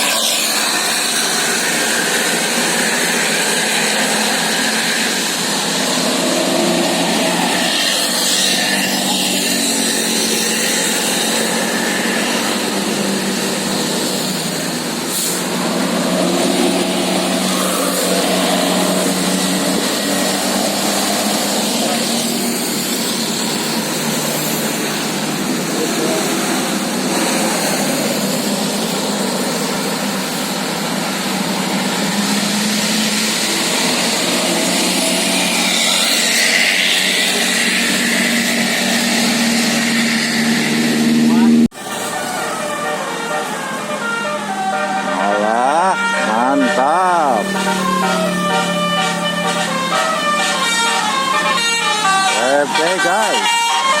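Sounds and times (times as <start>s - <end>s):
roadside traffic: 0.0s - 54.0s
people's voices: 24.6s - 28.8s, 41.2s - 41.7s, 45.2s - 47.7s, 52.3s - 53.5s.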